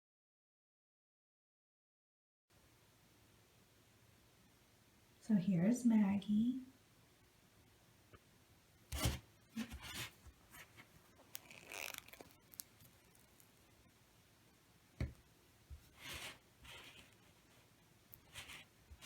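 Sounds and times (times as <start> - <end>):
rustles and scrapes: 8.9 - 13.6, 15.7 - 19.0.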